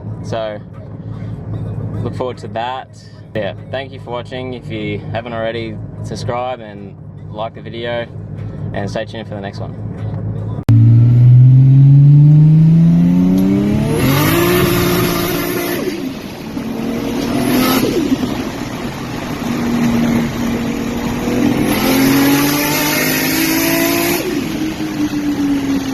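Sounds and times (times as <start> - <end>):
car engine revving through gears: 10.7 - 25.9.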